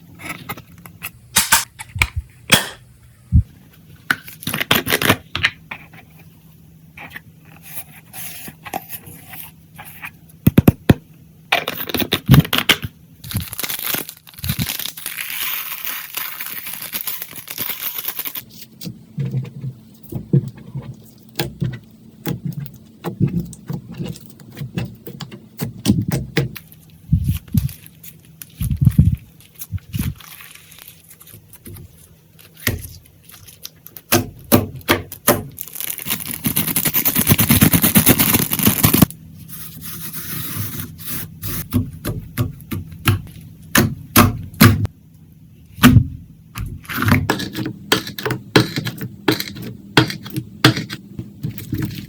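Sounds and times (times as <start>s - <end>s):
slime crackling and tearing: 13.2s - 18.5s, 35.1s - 39.1s.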